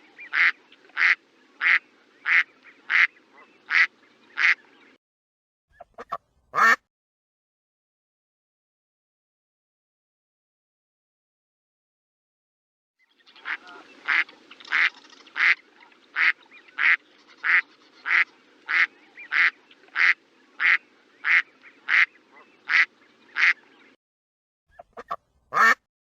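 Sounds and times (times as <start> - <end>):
faint background hiss: 0.0 - 5.0
duck quacking: 0.3 - 4.6, 5.8 - 6.8, 13.4 - 15.6, 16.2 - 23.6, 24.7 - 25.9.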